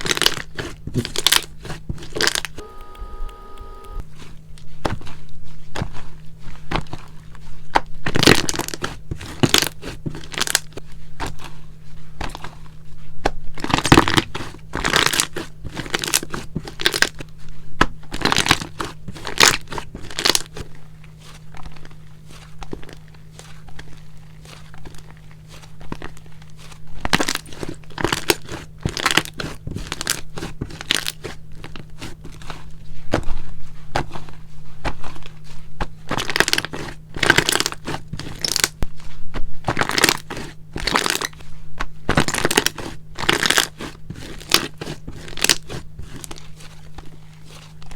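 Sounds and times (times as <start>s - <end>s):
slime squelching and crackling: 0.0s - 2.6s, 4.0s - 47.9s
steady low hum: 0.0s - 15.2s.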